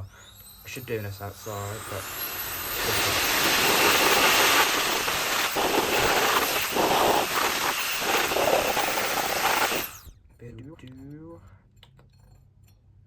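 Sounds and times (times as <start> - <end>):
air blower rushing: 0.0 - 10.1.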